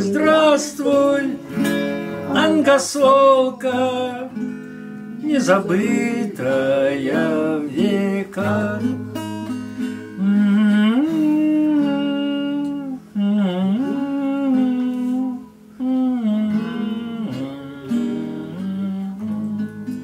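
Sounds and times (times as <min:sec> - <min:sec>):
man humming a melody: 0:00.0 - 0:09.5, 0:10.1 - 0:20.0
strummed acoustic guitar: 0:00.0 - 0:20.0.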